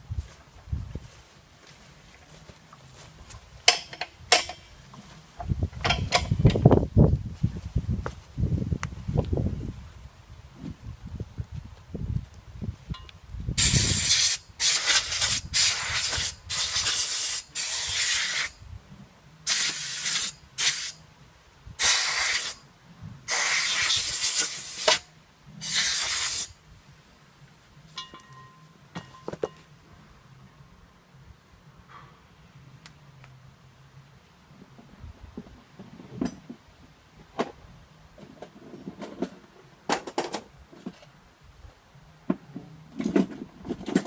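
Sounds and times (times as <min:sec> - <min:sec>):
pressurised gas hissing from nozzle: 0:13.6 - 0:18.6, 0:19.5 - 0:21.0, 0:21.8 - 0:22.6, 0:23.3 - 0:26.5
faint metallic clinks: 0:27.9 - 0:29.7.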